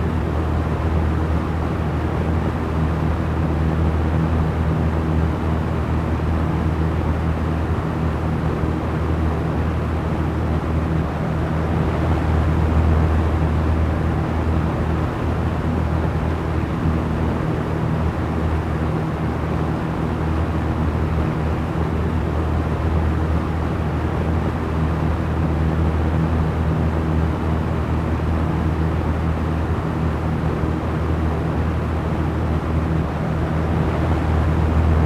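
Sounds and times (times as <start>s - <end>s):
fan air rushing: 0.0s - 35.0s
low motor hum: 31.7s - 35.0s.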